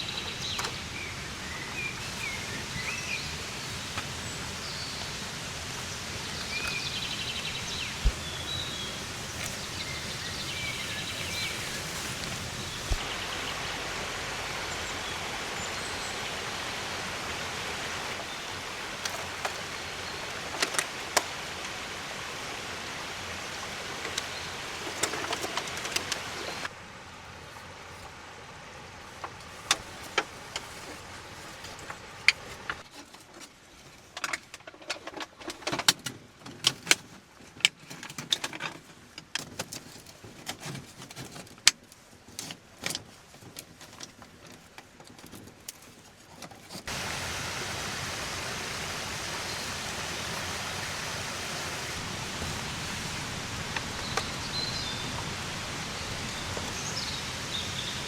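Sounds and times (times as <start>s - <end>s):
water rushing: 0.0s - 32.8s, 46.7s - 58.0s.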